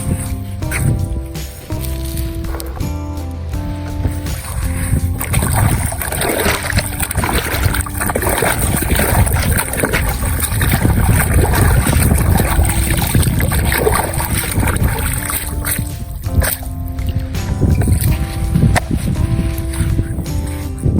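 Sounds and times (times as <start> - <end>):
faint background music: 0.0 - 20.9
water sloshing and splashing: 0.0 - 20.9.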